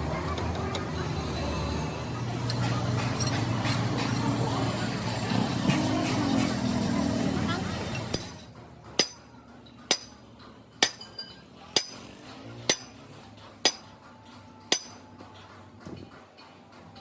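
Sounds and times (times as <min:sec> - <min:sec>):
hammer striking metal: 0:08.0 - 0:15.2.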